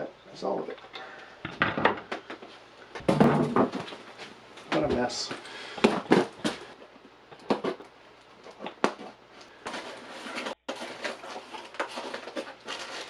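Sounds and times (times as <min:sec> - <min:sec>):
light knocks and clicks of parts: 0:00.6 - 0:09.5
packing material rustling: 0:07.4 - 0:13.0.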